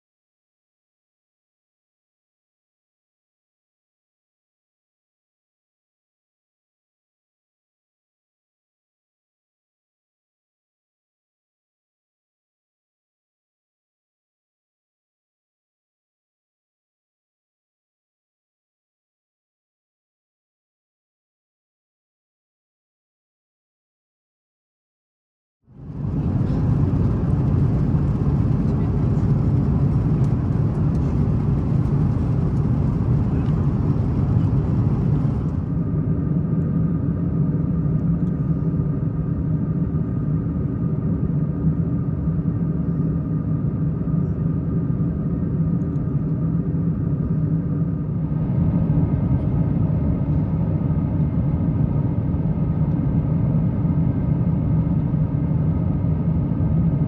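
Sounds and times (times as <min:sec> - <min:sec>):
airliner cabin engine rumble: 0:25.7 - 0:57.0
low droning hums: 0:25.7 - 0:57.0.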